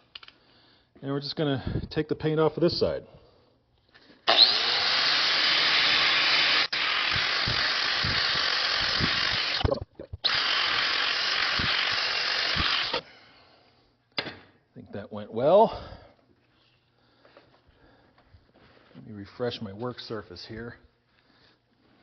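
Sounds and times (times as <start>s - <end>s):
power tool stripping paint: 4.3s - 13.0s.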